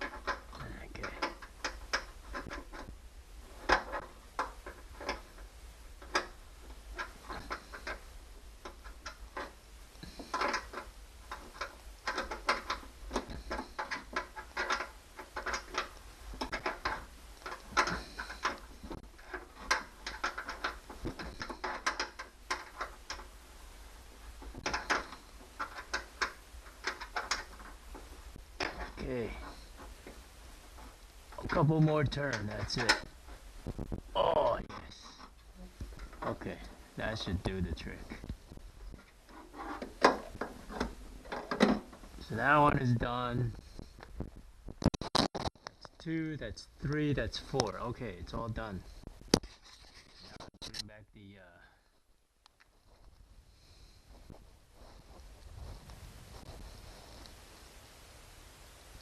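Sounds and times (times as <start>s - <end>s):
hand tool clicks and rattles: 0.0s - 2.9s, 3.5s - 8.0s, 8.6s - 23.3s, 24.4s - 33.1s.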